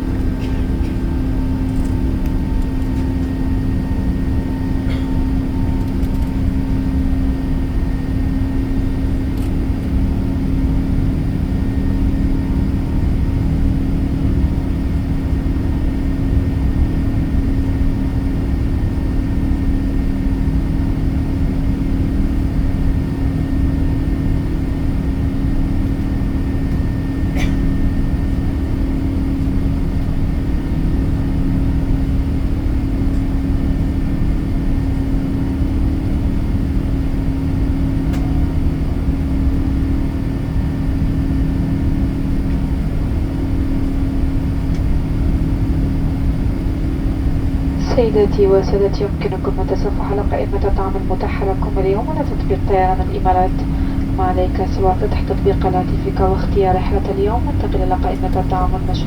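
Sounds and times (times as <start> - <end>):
aircraft cabin rumble: 0.0 - 59.0
steady hum: 35.6 - 59.0.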